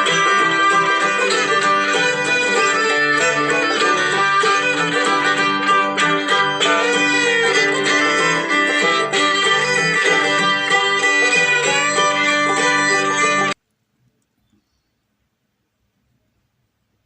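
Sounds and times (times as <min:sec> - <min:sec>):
upbeat country music: 0:00.0 - 0:13.6.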